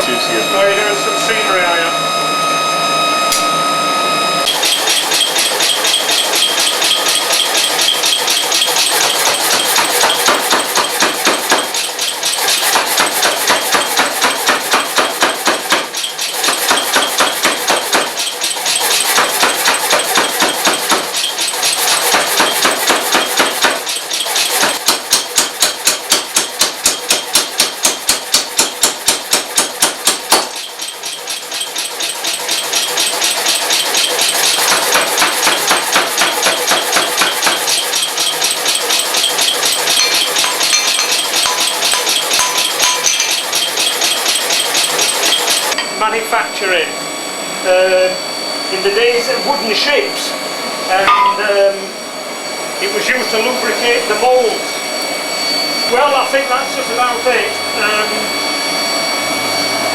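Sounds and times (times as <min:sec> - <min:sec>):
hammer blows on hot iron: 0:51.0 - 0:51.7.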